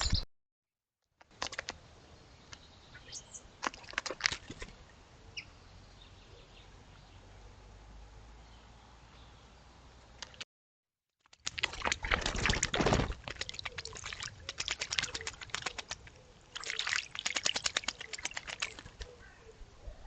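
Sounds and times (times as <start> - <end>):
bird splashing water: 3.5 - 4.9, 11.2 - 19.2.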